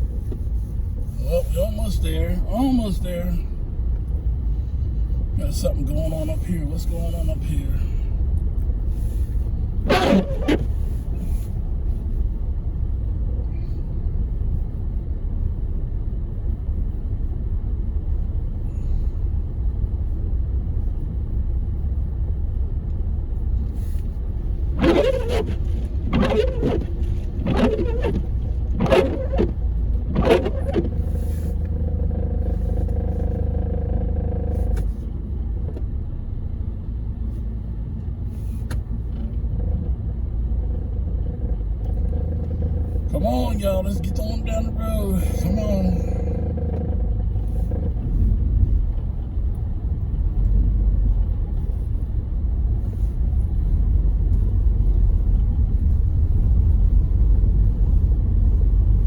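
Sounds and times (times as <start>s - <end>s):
car road and engine rumble: 0.0s - 59.0s
windshield wipers squeaking: 9.8s - 11.4s, 24.5s - 33.3s.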